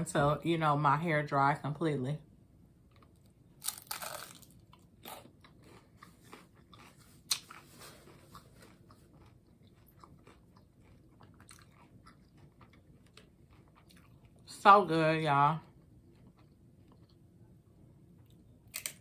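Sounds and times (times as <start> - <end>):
person chewing crunchy food: 2.8 - 14.5, 15.7 - 17.4.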